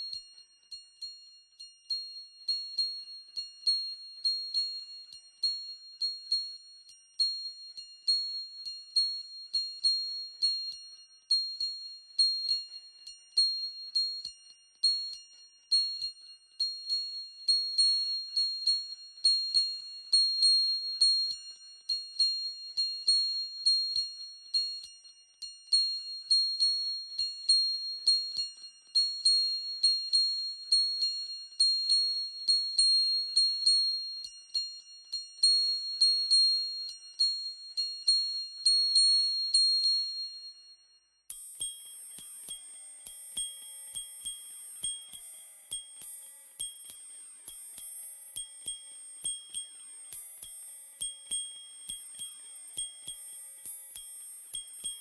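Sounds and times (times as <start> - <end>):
high-pitched bell-like chimes: 41.3 - 55.0
piercingly high steady tone: 41.3 - 55.0
soft low pulse: 41.3 - 55.0.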